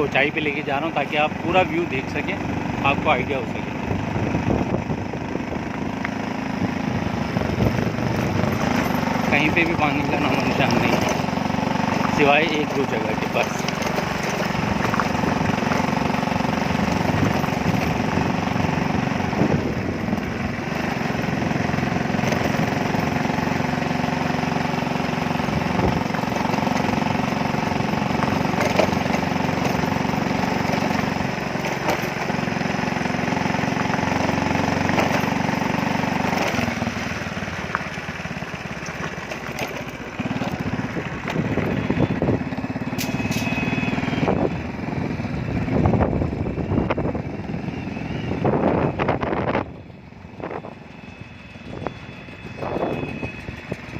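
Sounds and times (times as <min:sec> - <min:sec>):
road noise: 0:00.0 - 0:53.9
vehicle engine running: 0:00.0 - 0:53.9
wind noise: 0:03.8 - 0:05.7, 0:06.6 - 0:09.0, 0:16.8 - 0:20.5, 0:25.5 - 0:26.2, 0:44.0 - 0:51.0, 0:51.7 - 0:53.9.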